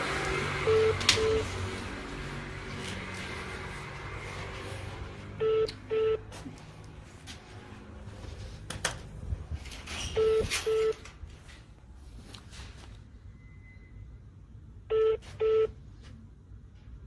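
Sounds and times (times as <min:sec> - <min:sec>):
telephone beeps: 0:00.6 - 0:01.5, 0:05.4 - 0:06.3, 0:10.1 - 0:11.0, 0:14.9 - 0:15.8.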